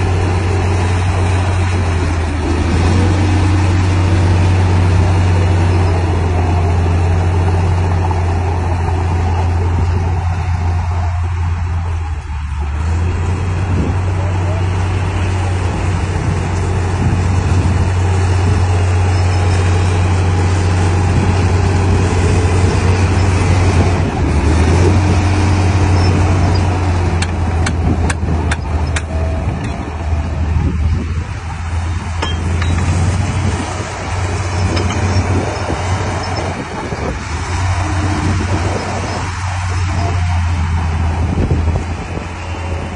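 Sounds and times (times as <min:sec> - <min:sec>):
bulldozer diesel engine running: 0:00.0 - 0:42.9
sharp metallic clinks: 0:32.2 - 0:33.0.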